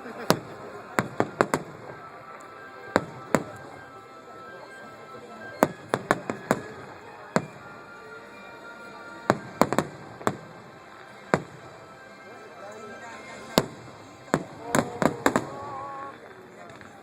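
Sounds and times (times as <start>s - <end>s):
fireworks bangs and pops: 0.2s - 3.9s, 5.5s - 7.7s, 9.3s - 11.8s, 13.4s - 17.0s.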